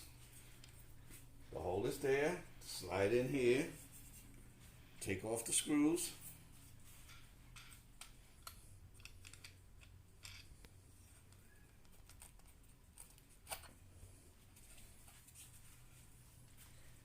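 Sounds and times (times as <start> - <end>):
small clicks and taps of screws: 7.1 - 10.7.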